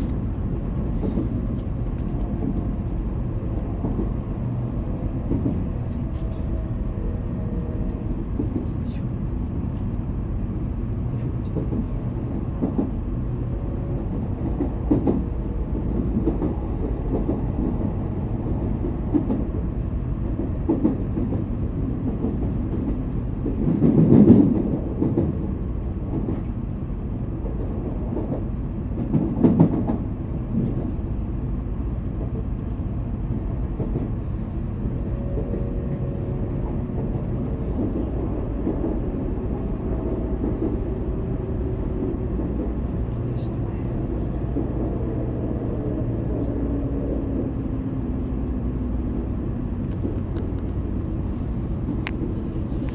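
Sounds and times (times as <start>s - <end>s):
train rumbling inside passenger car: 0.0s - 52.9s.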